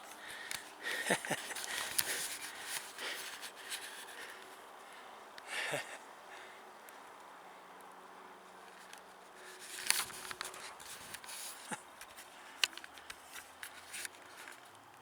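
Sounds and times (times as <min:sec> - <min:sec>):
brief rustles: 0:08.8 - 0:14.7.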